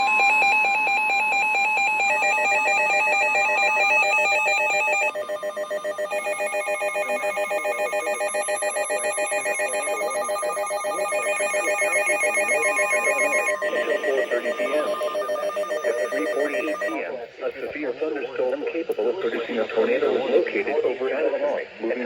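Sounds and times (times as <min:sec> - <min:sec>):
electronic alert tones warbling: 0:03.1 - 0:17.0
steady alert tone: 0:04.3 - 0:17.0.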